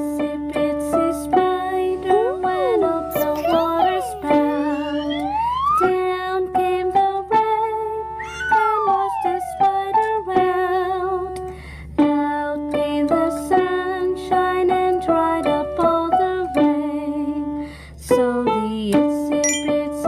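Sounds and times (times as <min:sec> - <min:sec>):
cheerful background music: 0:00.1 - 0:10.9, 0:19.4 - 0:20.0.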